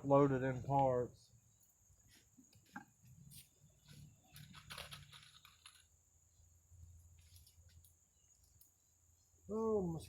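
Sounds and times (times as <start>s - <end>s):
faint rustles and clicks: 2.0s - 6.0s, 7.0s - 8.7s.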